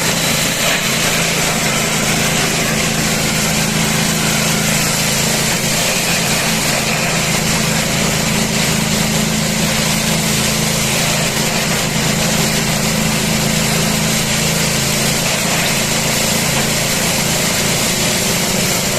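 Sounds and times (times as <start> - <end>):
grass chopper machine running: 0.0 - 18.9.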